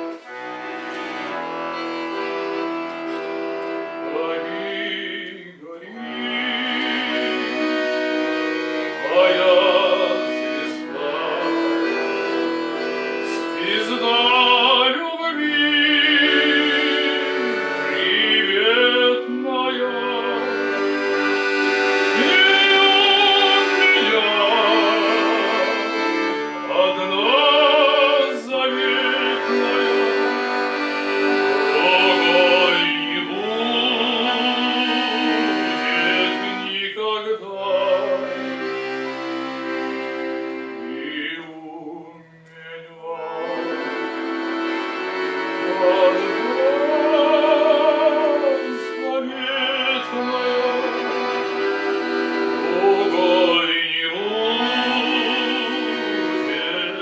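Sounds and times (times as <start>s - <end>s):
classical singing with vibrato: 0.0s - 57.0s
instrumental accompaniment: 0.0s - 57.0s.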